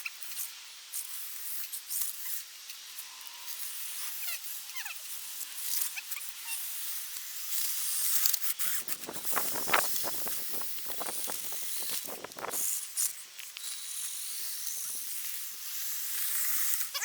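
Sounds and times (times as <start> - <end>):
snow hissing: 8.7 - 12.7.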